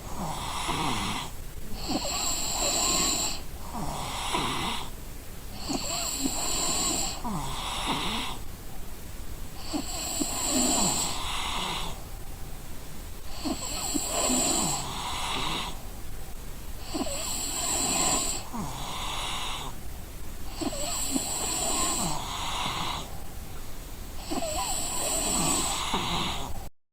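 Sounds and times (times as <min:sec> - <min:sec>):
person snoring: 0:00.0 - 0:04.9, 0:05.6 - 0:08.4, 0:09.6 - 0:12.0, 0:13.3 - 0:15.8, 0:16.8 - 0:19.8, 0:20.5 - 0:23.1, 0:24.2 - 0:26.7.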